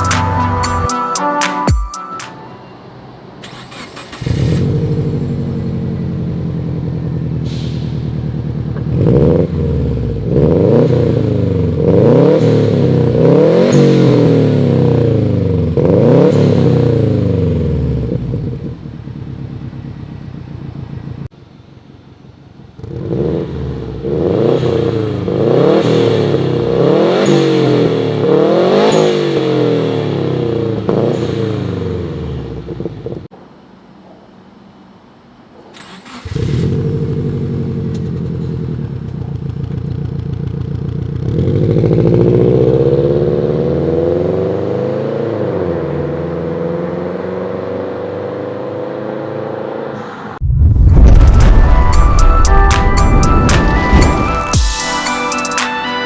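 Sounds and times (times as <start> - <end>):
car engine idling and revving: 2.9 - 54.9.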